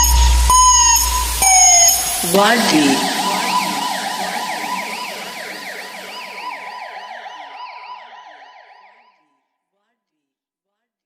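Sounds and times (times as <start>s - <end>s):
electronic siren warbling: 0.0s - 9.3s.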